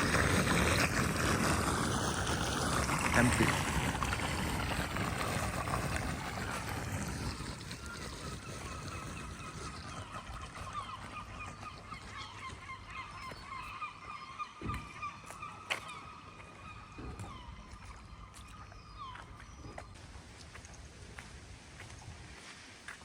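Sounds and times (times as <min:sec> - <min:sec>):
short high squeaks and gurgles: 0:00.0 - 0:12.3
floodwater rushing down a drain: 0:00.0 - 0:13.8.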